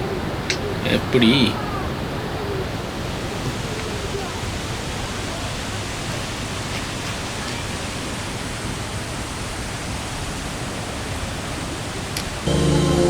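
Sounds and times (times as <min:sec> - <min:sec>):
waterfall rushing: 0:00.0 - 0:13.0
loud background music: 0:12.5 - 0:13.0.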